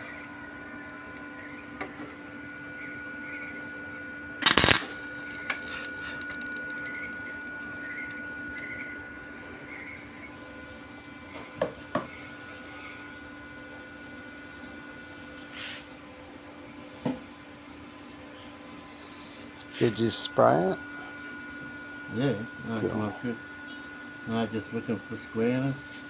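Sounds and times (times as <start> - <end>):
steady hum: 0.0 - 26.0
welder crackling burst: 4.4 - 8.2.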